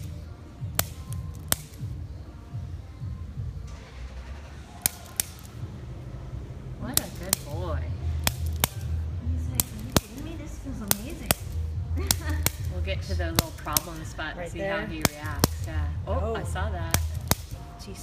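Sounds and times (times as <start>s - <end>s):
adjusting instrument clicks: 0.0s - 2.0s, 4.8s - 5.6s, 6.9s - 7.6s, 8.2s - 8.9s, 9.5s - 14.1s, 16.9s - 17.6s.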